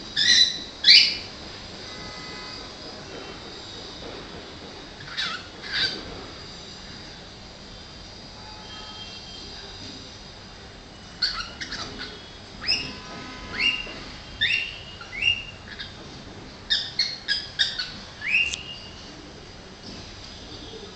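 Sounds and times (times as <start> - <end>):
cockatiel chirping: 11.2 - 12.8.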